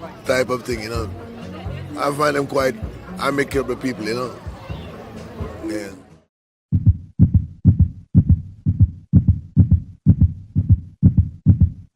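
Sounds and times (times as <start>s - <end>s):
deep double thumps: 6.7s - 11.9s.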